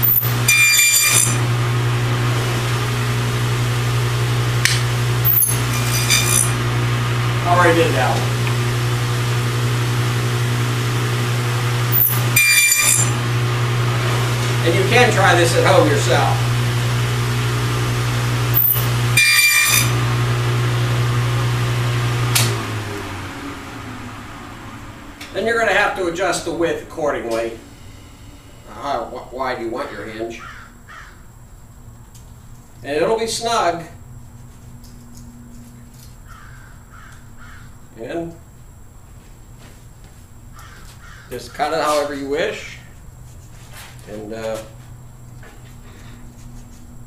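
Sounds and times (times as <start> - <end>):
high ringing bursts: 0.0 - 1.4, 5.2 - 6.6, 11.9 - 13.2, 18.6 - 20.0
table saw humming: 0.0 - 31.0.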